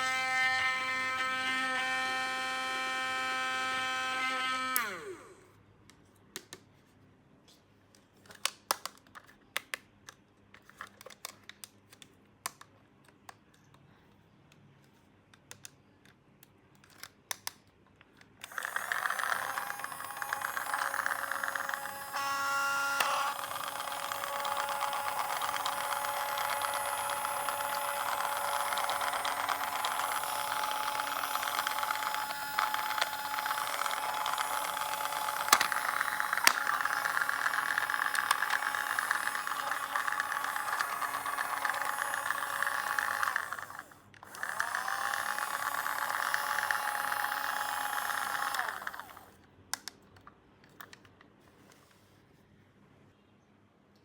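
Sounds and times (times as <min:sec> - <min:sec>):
small motor whirring: 0:00.0 - 0:05.5, 0:18.4 - 0:49.4.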